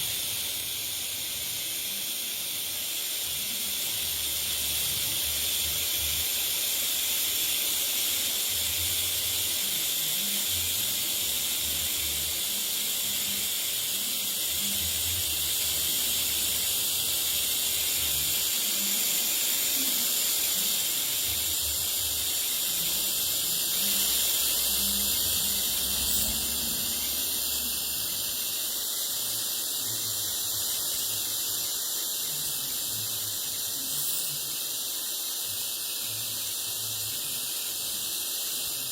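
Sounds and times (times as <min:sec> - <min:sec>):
welding arc hissing: 0:00.0 - 0:38.9.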